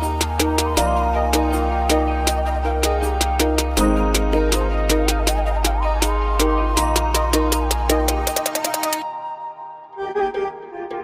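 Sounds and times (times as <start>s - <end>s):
light percussion beat: 0.0s - 9.0s
background music with bass and melody: 0.0s - 9.4s.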